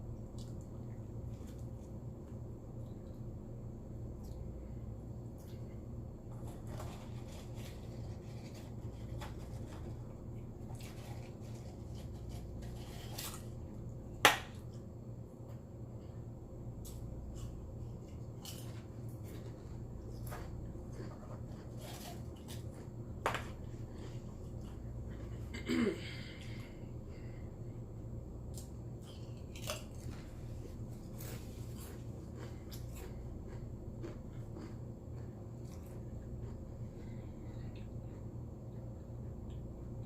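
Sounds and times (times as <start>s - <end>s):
steady low hum: 0.0s - 40.0s
chewing and mouth clicks: 28.5s - 30.3s, 31.1s - 37.0s.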